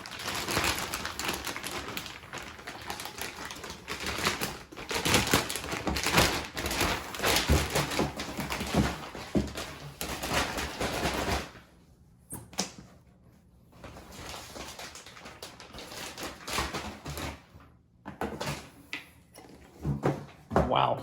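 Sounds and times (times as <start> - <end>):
packaging rustling: 0.0 - 11.6, 13.8 - 17.4.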